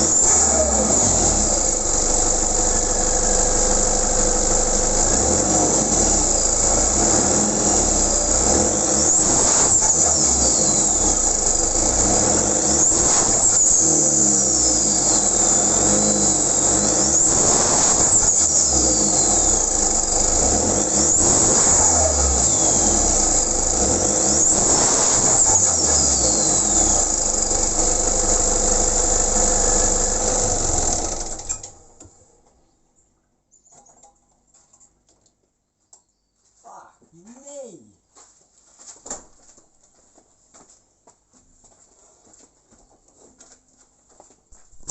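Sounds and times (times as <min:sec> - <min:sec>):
diesel engine revving: 0:00.0 - 0:31.9.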